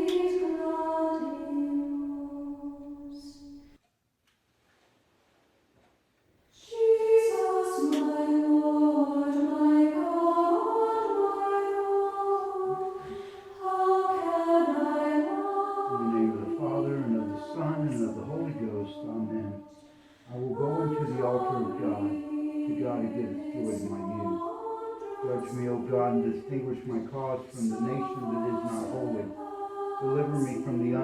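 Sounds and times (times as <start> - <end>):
choir singing long held notes: 0.0 - 3.7, 6.6 - 31.0
men's voices singing short phrases: 15.9 - 19.6, 20.3 - 24.4, 25.2 - 29.4, 30.0 - 31.0.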